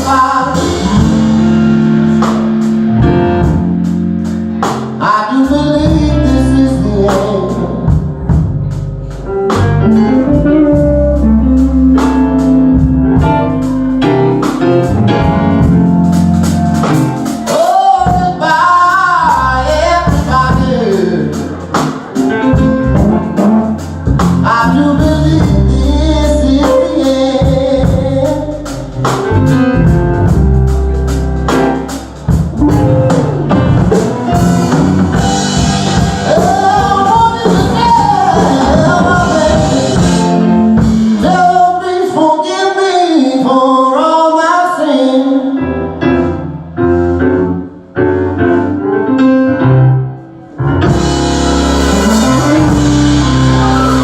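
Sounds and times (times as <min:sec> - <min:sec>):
person singing: 0:00.0 - 0:13.6, 0:17.0 - 0:29.5, 0:35.2 - 0:46.3, 0:51.5 - 0:54.0
drums: 0:00.0 - 0:42.9, 0:50.8 - 0:54.0
bass: 0:00.0 - 0:54.0
guitar: 0:00.0 - 0:54.0.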